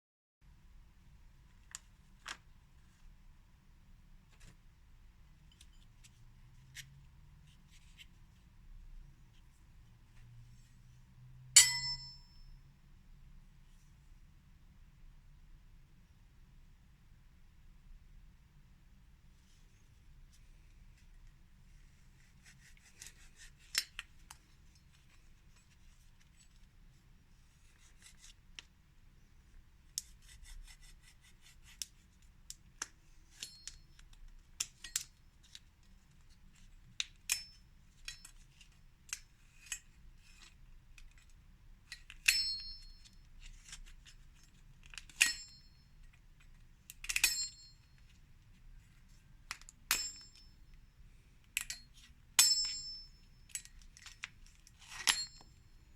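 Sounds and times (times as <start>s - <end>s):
plate ringing: 11.6s - 12.4s.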